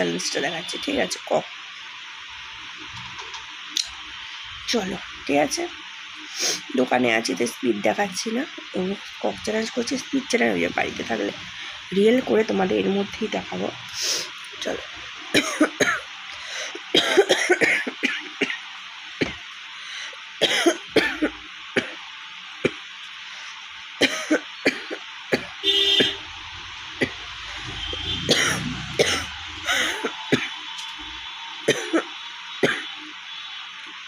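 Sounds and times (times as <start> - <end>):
woman coughing: 15.4 - 16.1, 16.9 - 18.6, 20.4 - 21.9, 24.0 - 26.2, 28.3 - 30.5, 31.7 - 32.9.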